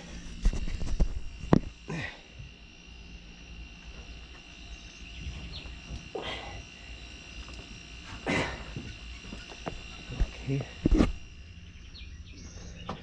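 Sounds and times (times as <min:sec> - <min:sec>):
high-pitched insect drone: 0:00.0 - 0:13.0
low hum: 0:00.0 - 0:13.0.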